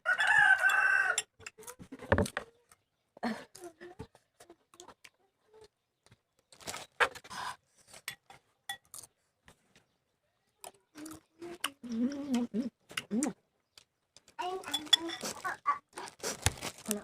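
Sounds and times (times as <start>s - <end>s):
crunchy wet chewing: 10.9s - 17.0s
person humming: 11.4s - 13.4s.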